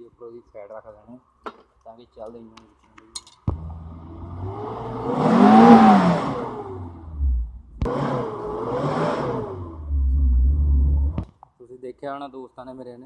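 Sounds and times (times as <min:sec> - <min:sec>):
car engine revving: 0:03.5 - 0:11.3.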